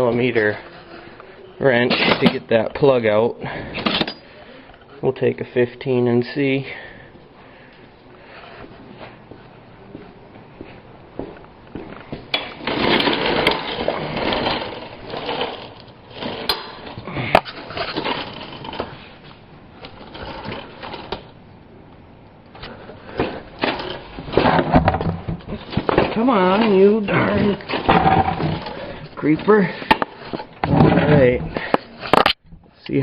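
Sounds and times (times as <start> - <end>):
metal tools clattering: 3.8 - 4.3, 12.3 - 19.0, 23.2 - 32.4
mechanic's creeper rolling on floor: 12.2 - 21.4, 22.5 - 32.3.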